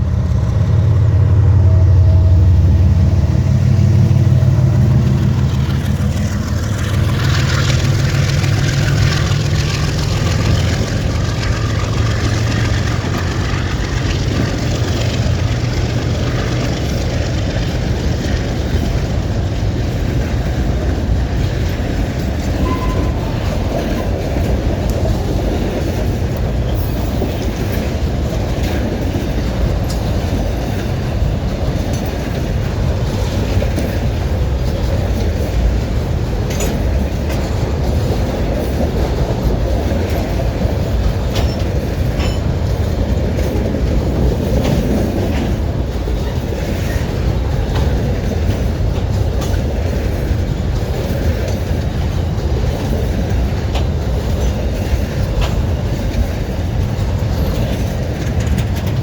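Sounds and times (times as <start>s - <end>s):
train wheels rumbling on rails: 0.0s - 59.0s.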